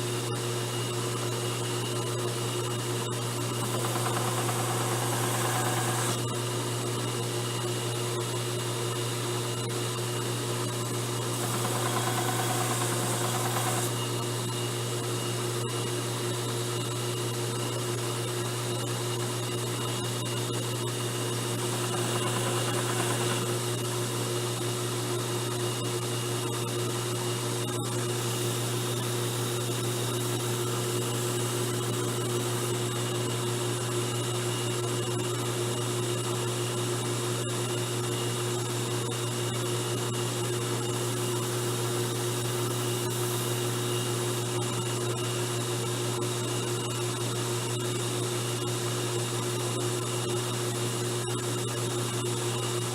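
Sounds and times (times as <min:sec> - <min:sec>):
belt grinder running: 0:03.6 - 0:06.2, 0:11.2 - 0:14.1, 0:21.6 - 0:23.8, 0:28.1 - 0:29.6.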